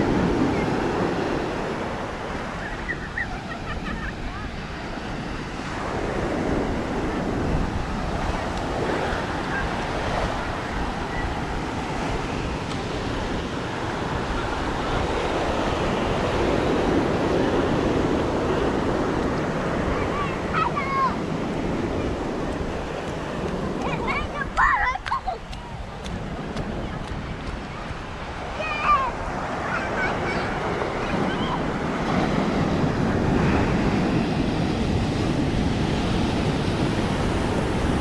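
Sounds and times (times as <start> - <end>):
ocean surf breaking on beach: 0.0 - 38.0
wind buffeting microphone: 0.0 - 38.0.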